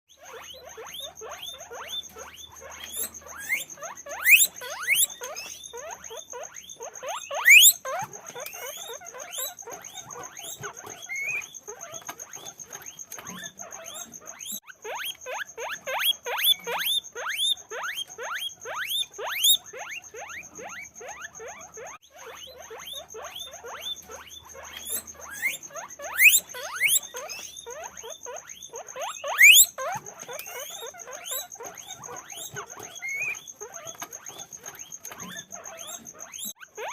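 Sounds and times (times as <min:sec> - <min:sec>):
guinea pigs squeaking: 0:00.1 - 0:36.9
loud guinea pig squeals: 0:00.1 - 0:36.9.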